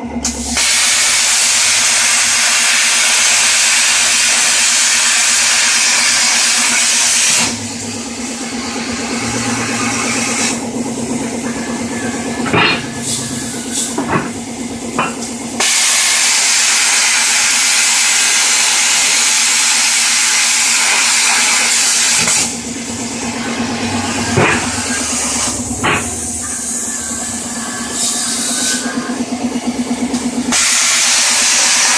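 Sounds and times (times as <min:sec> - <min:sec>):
plasma torch hissing: 0:00.2 - 0:29.2, 0:30.5 - 0:31.9
machine hum: 0:06.9 - 0:15.7, 0:20.7 - 0:30.6.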